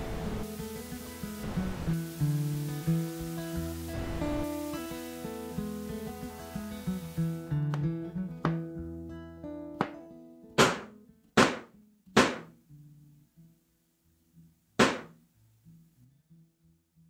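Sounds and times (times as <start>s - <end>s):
hand whacking television set: 9.8s - 10.0s, 10.6s - 12.6s, 14.8s - 15.2s.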